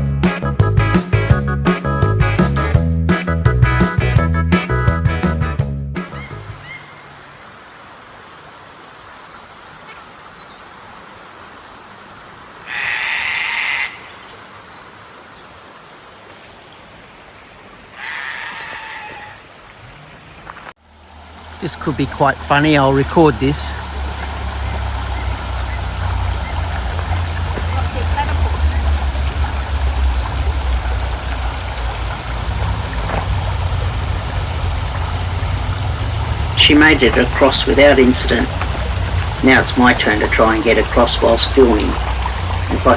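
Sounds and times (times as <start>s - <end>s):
forest hiss: 6.0s - 42.9s
loud harsh bird calls: 6.1s - 7.2s, 12.5s - 16.2s, 18.0s - 19.4s, 21.1s - 42.9s
creek water running over rocks: 6.3s - 42.9s
loud low rumble: 21.2s - 42.9s.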